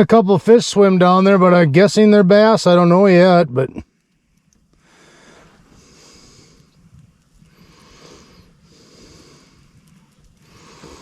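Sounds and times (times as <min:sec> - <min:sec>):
person breathing: 0:04.8 - 0:06.8, 0:07.5 - 0:11.0.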